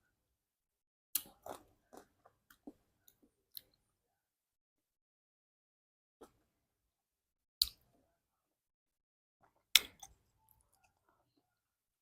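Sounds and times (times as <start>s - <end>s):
person chewing fruit: 1.2s - 3.8s.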